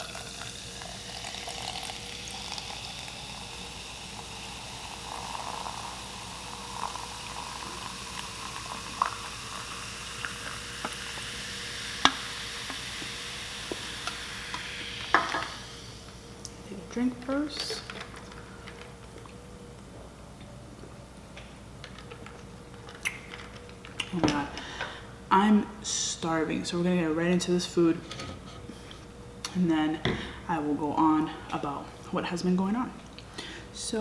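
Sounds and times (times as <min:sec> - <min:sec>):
soda fizzing: 0:00.0 - 0:17.9.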